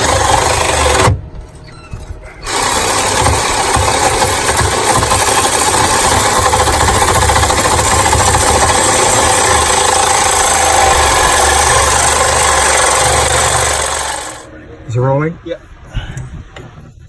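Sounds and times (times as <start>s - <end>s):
handheld power tool running: 0.0s - 1.2s, 2.4s - 14.5s.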